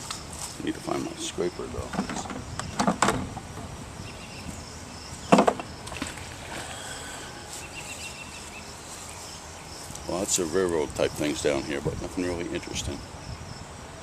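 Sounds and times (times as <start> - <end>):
faint insect buzzing: 3.8 - 13.8.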